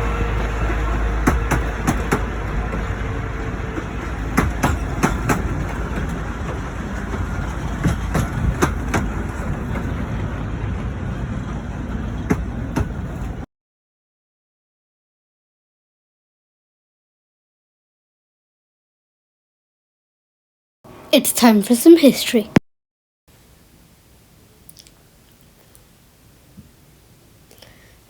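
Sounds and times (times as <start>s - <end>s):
miniature train rumble: 0.0s - 13.4s
wheels clicking over rail joints: 0.0s - 13.4s.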